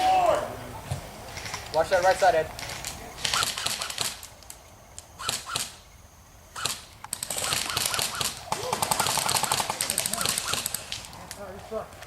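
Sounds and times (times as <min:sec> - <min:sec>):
airsoft guns firing: 0:03.2 - 0:04.3, 0:05.2 - 0:05.8, 0:06.6 - 0:11.2.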